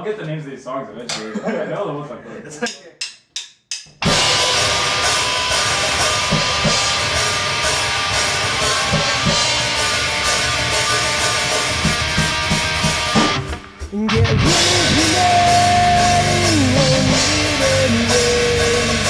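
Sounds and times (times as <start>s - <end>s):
loud heavy rock song: 4.0s - 19.0s.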